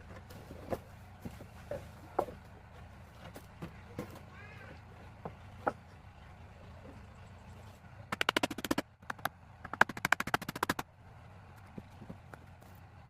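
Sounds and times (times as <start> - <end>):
rapid sharp knocks: 8.1 - 10.8.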